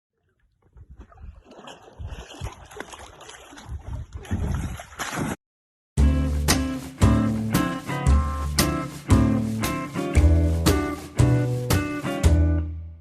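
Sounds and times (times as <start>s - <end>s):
guitar music with steady beat: 6.0s - 12.9s.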